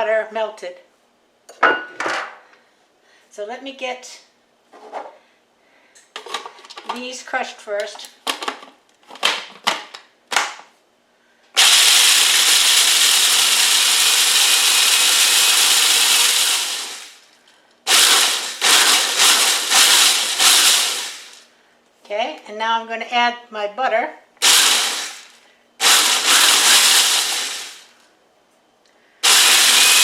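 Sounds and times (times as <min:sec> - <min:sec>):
food processor grinding pretzels: 0:11.6 - 0:17.3, 0:17.9 - 0:21.4, 0:24.4 - 0:28.0, 0:29.2 - 0:30.0.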